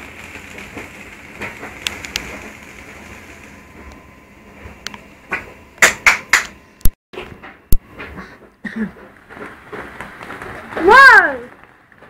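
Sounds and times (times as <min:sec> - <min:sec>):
firework cracks: 0:00.0 - 0:03.6, 0:05.8 - 0:06.5.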